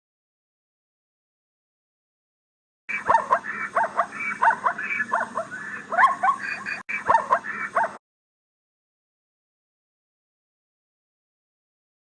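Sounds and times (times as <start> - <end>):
wild dog yipping and yelping: 2.9 - 8.0.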